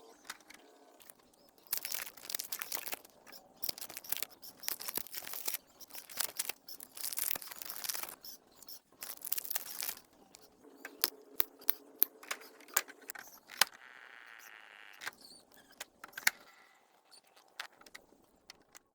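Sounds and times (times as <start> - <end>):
packaging crinkling: 0.7 - 13.1.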